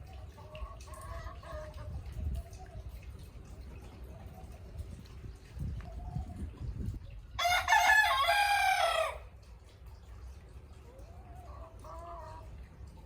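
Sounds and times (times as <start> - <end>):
rooster crowing: 7.4 - 9.2.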